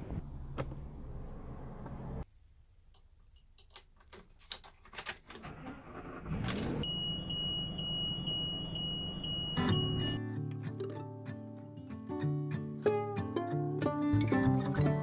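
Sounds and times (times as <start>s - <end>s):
high-pitched electronic beep tone: 6.8s - 10.2s.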